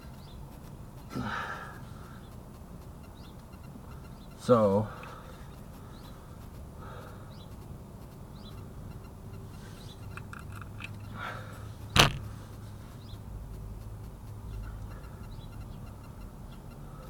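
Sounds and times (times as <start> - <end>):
low steady background noise: 0.0 - 17.0
sharp knock: 12.0 - 12.3.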